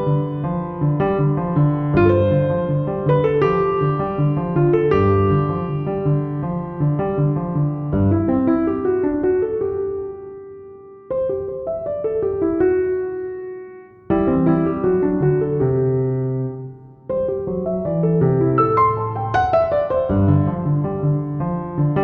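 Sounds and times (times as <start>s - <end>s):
gentle piano music: 0.0s - 22.0s.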